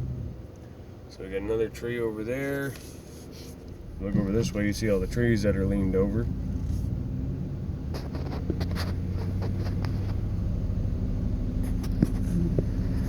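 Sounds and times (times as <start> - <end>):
vehicle engine humming: 0.0 - 13.0
small clicks and rustles: 7.9 - 10.4, 11.6 - 13.0.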